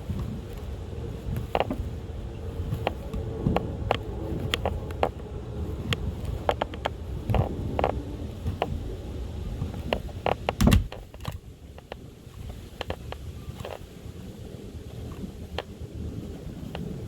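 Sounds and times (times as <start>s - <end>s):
loud knock: 10.6s - 11.0s.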